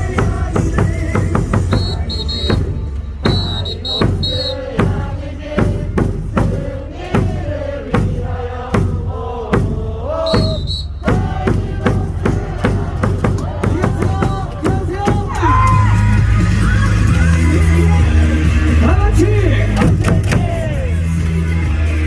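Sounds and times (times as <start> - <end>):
crowd chanting: 0.0 - 15.5
cheer song over loudspeakers: 0.0 - 22.0.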